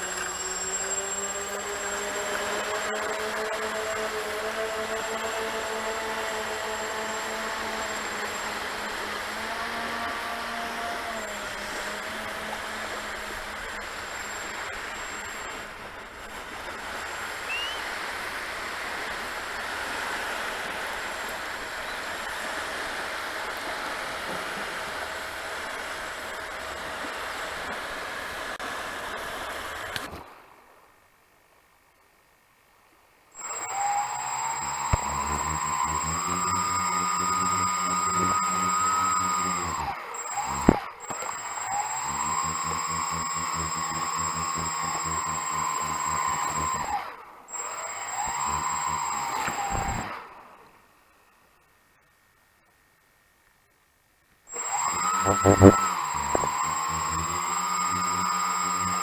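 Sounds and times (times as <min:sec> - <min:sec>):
electric motors whining: 0:00.0 - 0:17.8, 0:33.4 - 0:50.4, 0:54.5 - 0:59.0.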